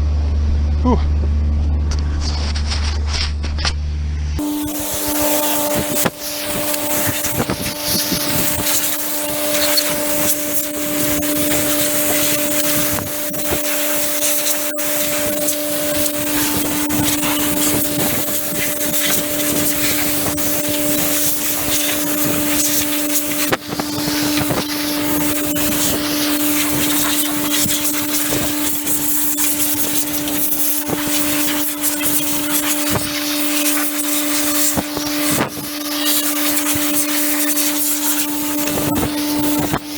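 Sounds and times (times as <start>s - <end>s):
steady hum: 0.0s - 39.9s
compressed air blow gun hissing: 4.4s - 39.9s.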